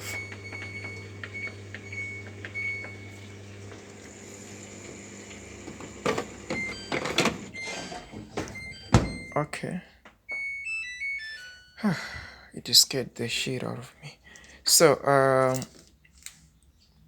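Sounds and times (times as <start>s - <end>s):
control panel beeping: 0.0s - 3.3s, 6.4s - 9.4s, 10.3s - 11.8s.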